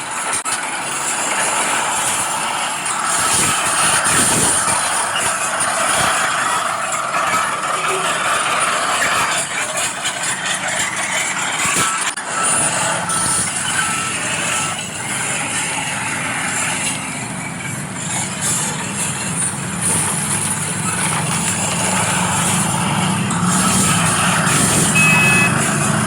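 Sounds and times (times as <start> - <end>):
model machine engine noise: 0.0 - 26.0
reversing alarm beeps: 11.8 - 15.3, 23.5 - 26.0.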